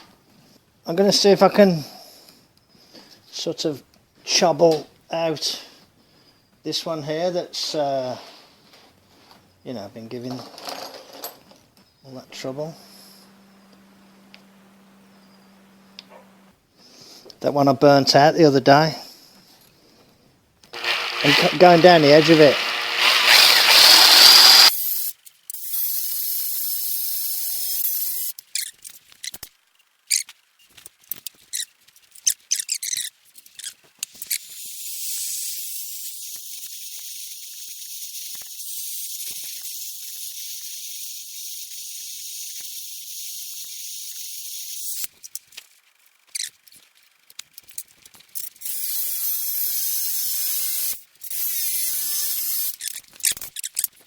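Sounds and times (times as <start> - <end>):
high-speed grinding tool: 20.8 - 28.3, 48.7 - 52.9.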